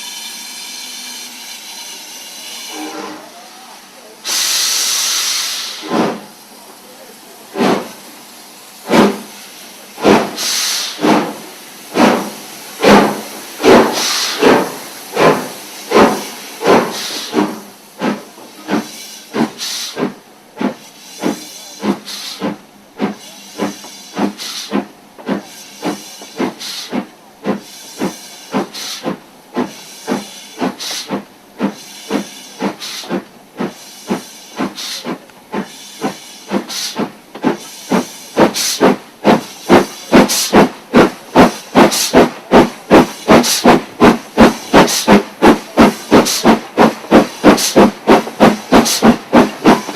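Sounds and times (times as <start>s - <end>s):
hiss of steam: 0.0s - 49.9s
steam locomotive chuffing: 0.0s - 49.9s.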